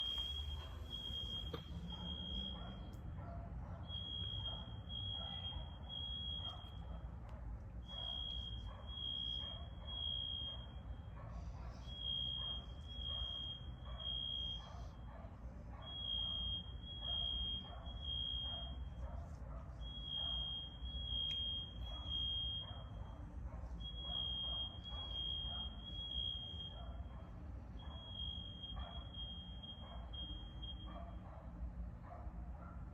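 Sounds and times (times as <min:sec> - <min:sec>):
fire alarm beeping: 0:00.0 - 0:02.6, 0:03.8 - 0:06.8, 0:12.0 - 0:14.6, 0:15.9 - 0:18.9, 0:19.8 - 0:23.0, 0:23.8 - 0:26.9, 0:27.8 - 0:31.2.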